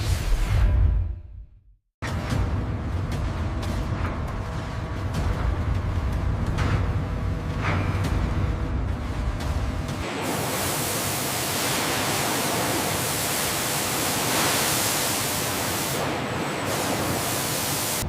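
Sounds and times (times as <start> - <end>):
loud rushing hiss: 10.0 - 18.0.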